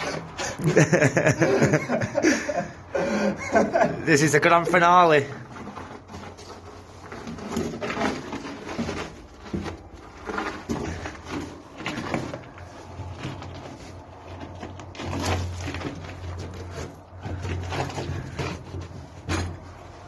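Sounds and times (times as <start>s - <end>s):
scuffing scraping and knocks: 4.1s - 20.0s.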